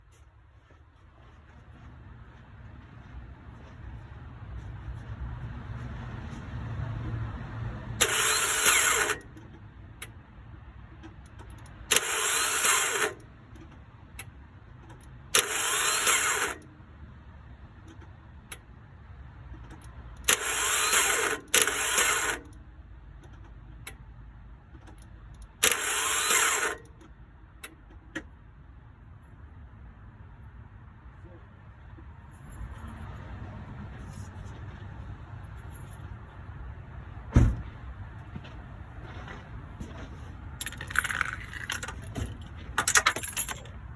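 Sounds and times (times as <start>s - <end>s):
engine starter whining: 8.0s - 10.1s, 11.2s - 13.3s, 14.9s - 16.7s, 19.7s - 22.6s, 24.9s - 27.0s.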